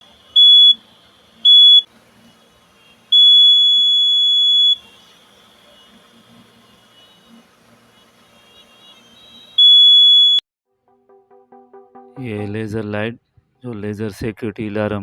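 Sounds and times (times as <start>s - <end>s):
high-pitched alarm buzzer beeps: 3.2s - 5.0s, 8.5s - 10.4s.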